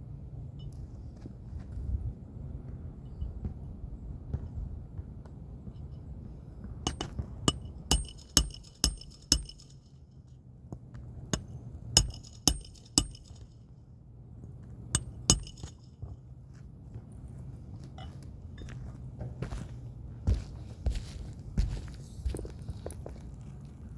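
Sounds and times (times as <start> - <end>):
low steady hum: 5.6 - 16.2
sharp clinks on hard object: 6.9 - 9.9, 11.4 - 13.5, 15.0 - 15.9.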